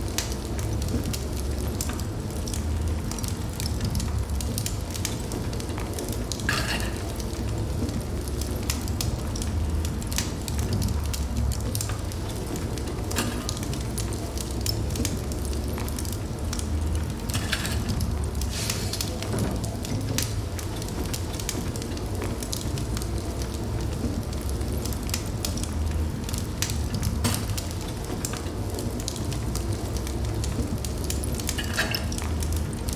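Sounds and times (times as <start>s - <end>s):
wood fire crackling and popping: 0.0s - 32.9s
fire hissing: 16.6s - 20.0s.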